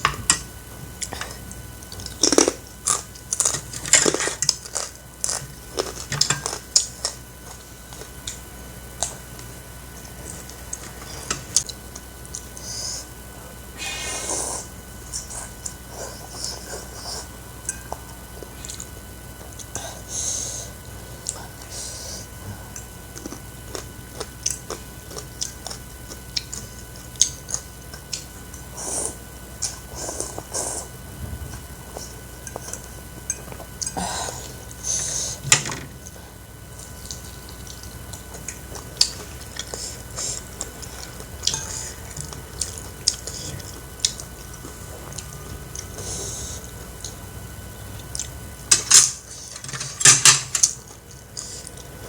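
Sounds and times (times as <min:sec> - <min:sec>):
chewing and wet mouth sounds: 0:20.8 - 0:34.8, 0:36.0 - 0:48.6, 0:50.7 - 0:52.0.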